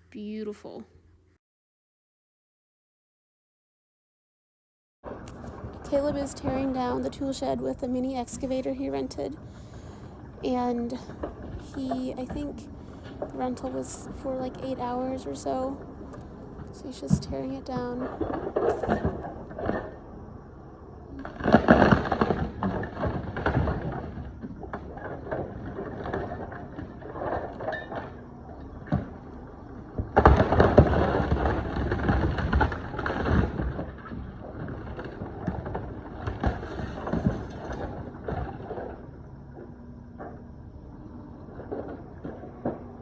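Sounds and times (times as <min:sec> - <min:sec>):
wooden boards cracking and crashing: 0:21.2 - 0:28.2, 0:30.0 - 0:39.0.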